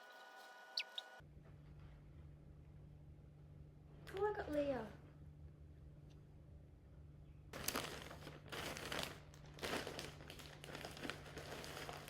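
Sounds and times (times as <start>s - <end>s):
packaging crinkling and rustling: 7.6s - 12.0s.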